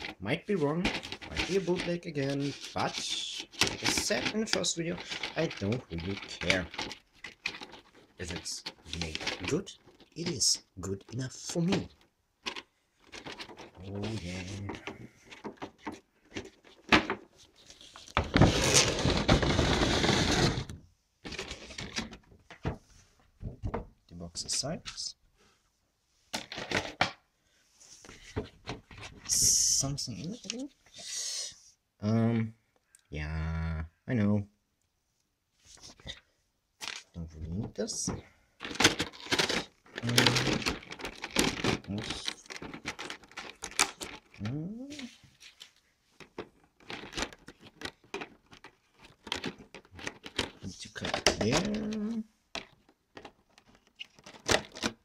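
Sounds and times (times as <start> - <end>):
cardboard and plastic scraping: 0.0 - 10.6, 11.2 - 22.9, 28.0 - 29.4, 36.8 - 55.0
packaging crinkling and rustling: 0.0 - 22.4, 37.8 - 55.0.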